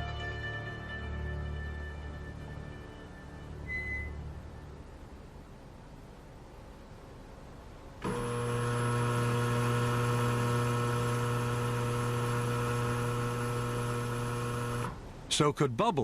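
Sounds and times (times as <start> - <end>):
machine humming: 8.0 - 15.0.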